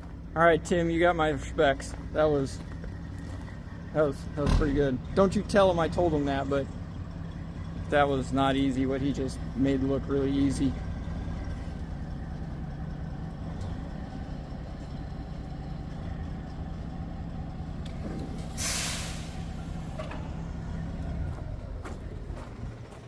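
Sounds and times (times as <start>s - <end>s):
truck engine idling: 0.0s - 23.0s
air brakes hissing: 17.9s - 20.7s.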